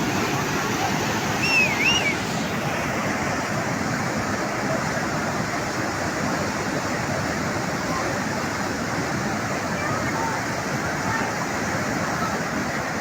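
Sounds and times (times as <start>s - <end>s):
floodwater rushing roar: 0.0s - 13.0s
wavering whistle: 1.3s - 2.3s.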